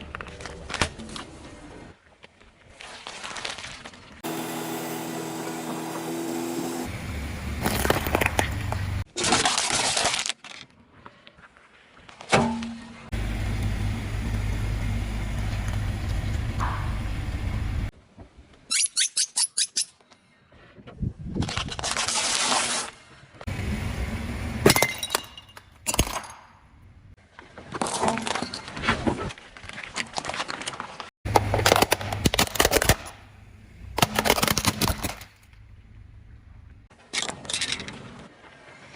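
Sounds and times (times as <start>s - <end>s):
low rumble: 13.2s - 17.9s
tyres crushing objects: 30.3s - 35.5s.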